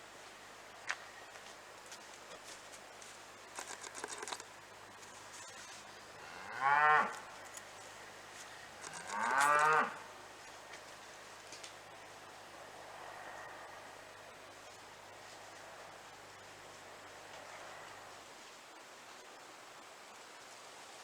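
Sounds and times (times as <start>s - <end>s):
cow mooing: 6.2s - 7.2s, 8.8s - 10.0s.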